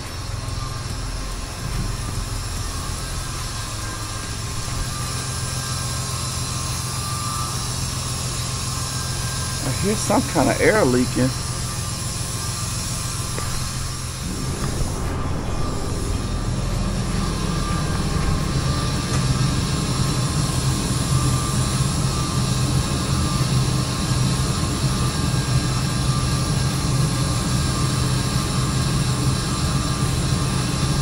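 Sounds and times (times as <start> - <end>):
truck engine idling: 0.0 - 20.8
continuous air hiss: 9.6 - 11.7.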